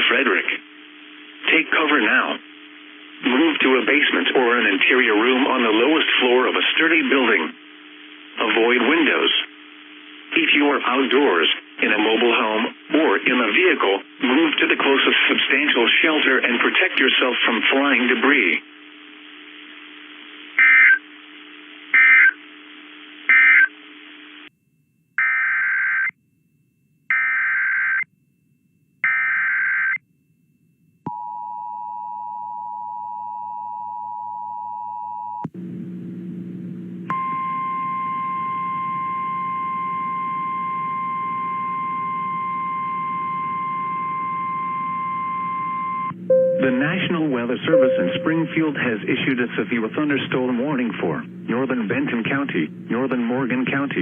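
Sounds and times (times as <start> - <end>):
steady warning tone: 37.1 - 54.0
two-tone attention signal: 41.8 - 48.9.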